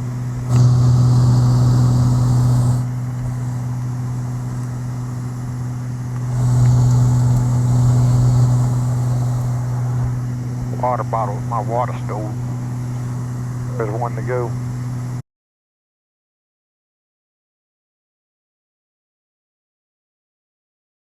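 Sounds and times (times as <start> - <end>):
airplane engines droning: 0.2 - 15.2
rushing air hiss: 0.5 - 10.0.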